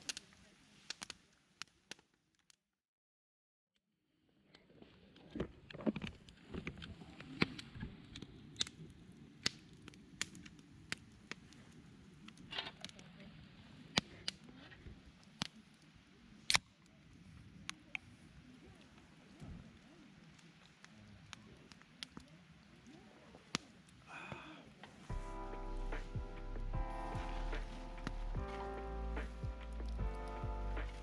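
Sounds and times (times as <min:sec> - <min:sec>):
wood fire crackling: 0:00.0 - 0:02.1, 0:05.7 - 0:31.0
low rush of burning: 0:17.0 - 0:31.0.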